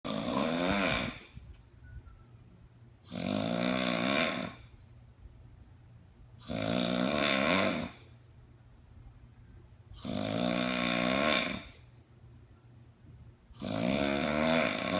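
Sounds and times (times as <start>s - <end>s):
person snoring loudly: 0.1s - 1.3s, 3.0s - 4.6s, 6.4s - 8.0s, 10.0s - 11.8s, 13.6s - 14.9s.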